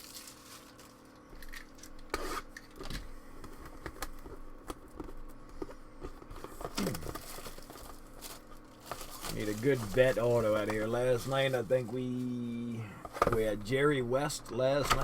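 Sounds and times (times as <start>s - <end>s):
cellophane and cardboard rustling: 0.0s - 1.1s, 6.2s - 13.8s.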